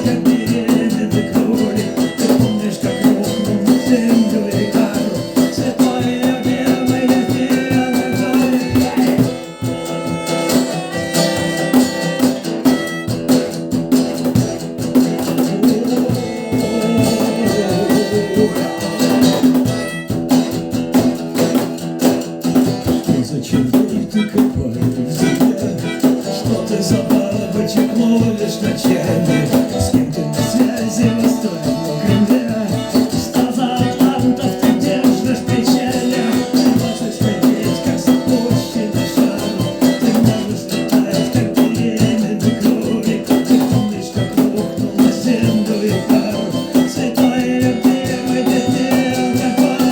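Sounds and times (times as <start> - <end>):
light percussion: 0.0 - 49.9
strummed guitars: 0.0 - 49.9.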